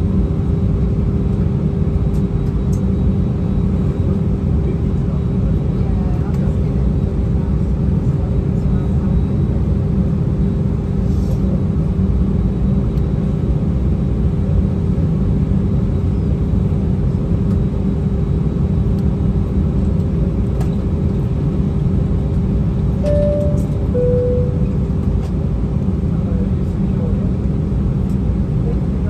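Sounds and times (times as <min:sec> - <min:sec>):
constant hum: 0:00.0 - 0:29.0
two short cabin tones: 0:23.0 - 0:25.3.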